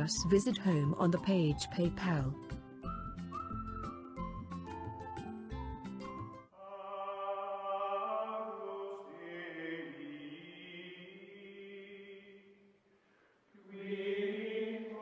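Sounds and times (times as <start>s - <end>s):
choir-like chanting music: 6.5s - 12.6s, 13.6s - 15.0s.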